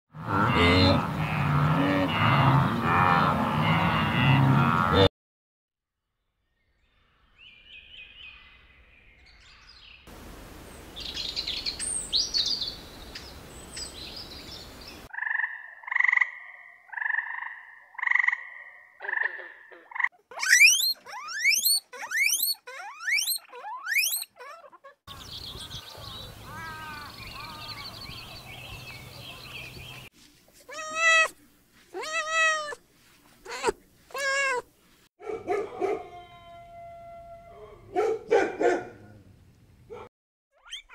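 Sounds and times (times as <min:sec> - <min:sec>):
background hiss: 0:10.1 - 0:15.1
two-part animal calls: 0:19.0 - 0:25.0, 0:30.7 - 0:32.8, 0:33.4 - 0:34.6
animal chirps: 0:19.7 - 0:25.0, 0:30.7 - 0:31.3, 0:32.0 - 0:32.8, 0:33.5 - 0:34.6, 0:40.6 - 0:40.9
downward sweeping animal calls: 0:20.4 - 0:24.4.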